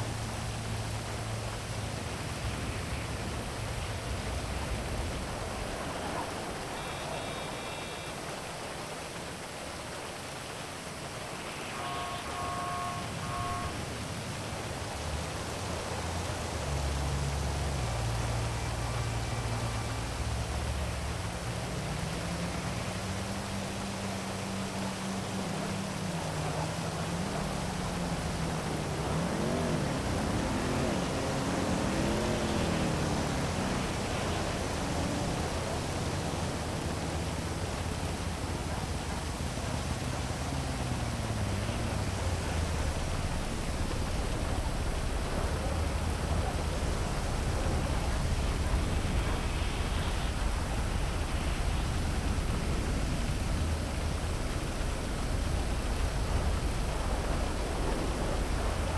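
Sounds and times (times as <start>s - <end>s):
heavy rain hiss: 0.0s - 58.9s
vehicle engine passing: 14.9s - 58.9s.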